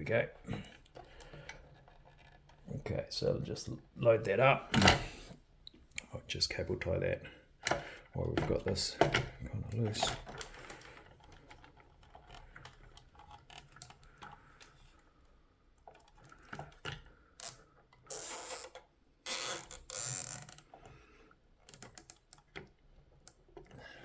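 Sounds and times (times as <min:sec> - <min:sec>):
small plastic clicks: 0:15.9 - 0:20.8, 0:21.6 - 0:23.7
ratchet clicks: 0:17.4 - 0:20.7, 0:21.7 - 0:22.4
cable tie ratchet rasps: 0:17.4 - 0:20.8, 0:21.7 - 0:22.5.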